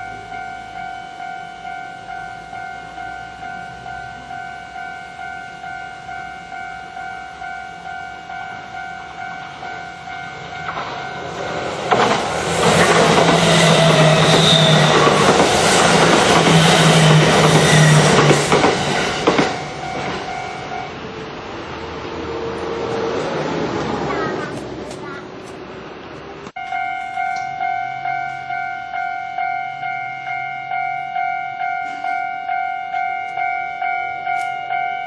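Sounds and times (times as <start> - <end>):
level-crossing warning bell: 0.0 - 21.2, 26.6 - 35.0
electric train passing: 0.0 - 35.0
train wheels clacking on rail joints: 10.3 - 20.8.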